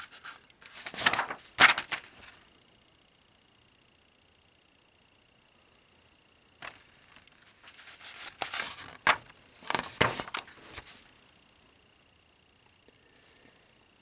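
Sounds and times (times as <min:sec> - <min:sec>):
paper crinkling and rustling: 0:00.0 - 0:02.4, 0:06.6 - 0:11.2
sharp paper snaps: 0:00.1 - 0:02.4, 0:06.6 - 0:10.9.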